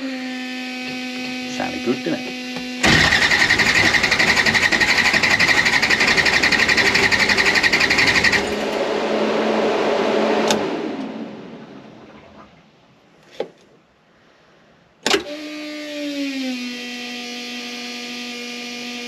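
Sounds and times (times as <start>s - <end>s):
car engine running: 0.6s - 12.3s.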